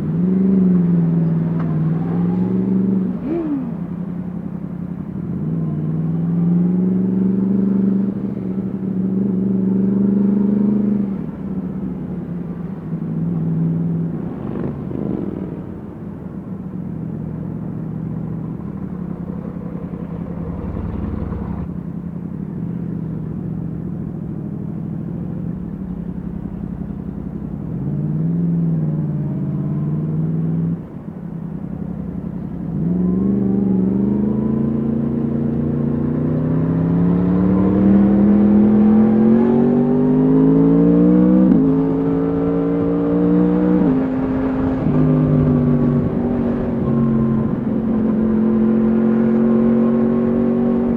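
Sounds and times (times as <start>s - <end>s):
motorcycle engine revving: 0.0s - 12.0s, 12.6s - 16.5s, 17.4s - 21.9s, 32.1s - 50.9s.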